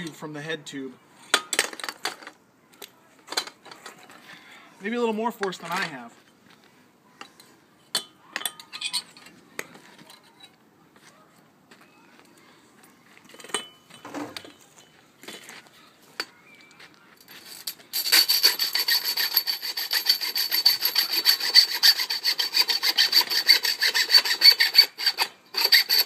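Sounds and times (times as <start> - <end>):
saw cutting through metal tube: 18.1 - 26.0.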